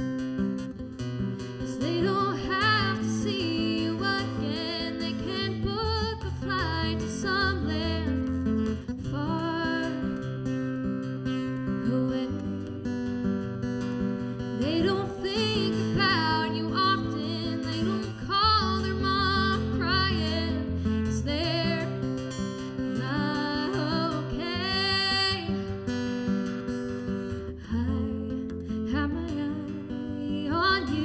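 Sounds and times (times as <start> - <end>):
acoustic guitar strumming: 0.0 - 31.0
person singing with vibrato: 1.6 - 8.2, 14.6 - 22.3, 22.9 - 25.7.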